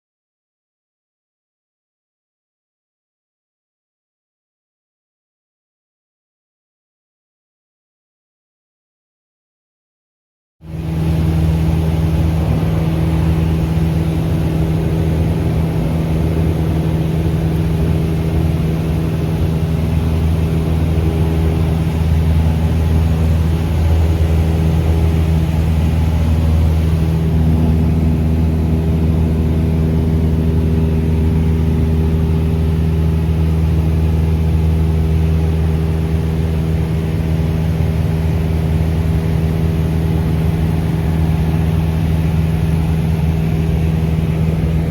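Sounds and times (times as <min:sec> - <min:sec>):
propeller plane engine drone: 0:10.6 - 0:44.9.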